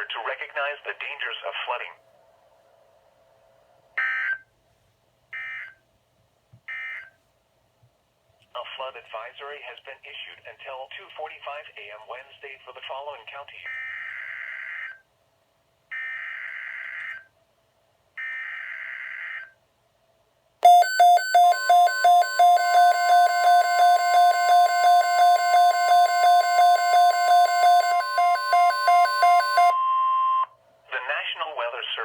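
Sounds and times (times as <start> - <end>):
steady warning alarm tone: 20.6 - 30.4
alarm beeping rapidly: 20.6 - 30.5.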